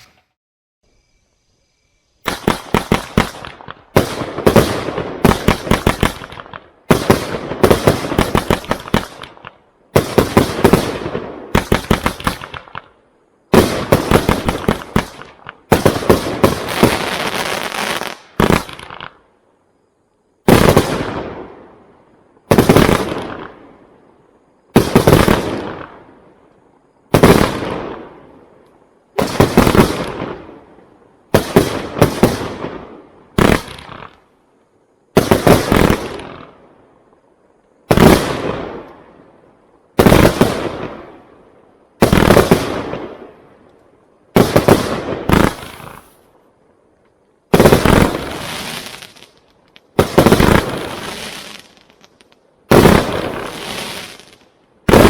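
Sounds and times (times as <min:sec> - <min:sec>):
firework volleys: 0:02.1 - 0:19.3, 0:20.4 - 0:21.6, 0:24.7 - 0:26.0, 0:29.2 - 0:30.6, 0:31.3 - 0:34.3, 0:35.1 - 0:36.6, 0:42.0 - 0:43.4, 0:44.3 - 0:46.3, 0:47.5 - 0:55.0
firework loud bursts: 0:02.2 - 0:19.2, 0:31.3 - 0:34.2, 0:44.4 - 0:46.2, 0:47.5 - 0:55.0.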